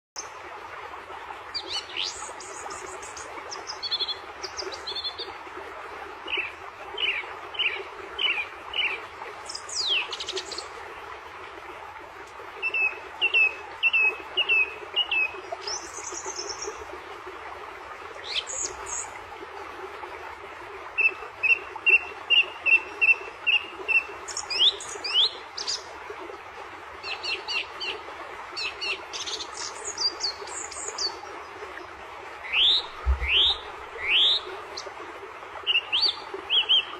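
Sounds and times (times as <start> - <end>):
songbirds chirping and trilling: 32.4 - 34.9.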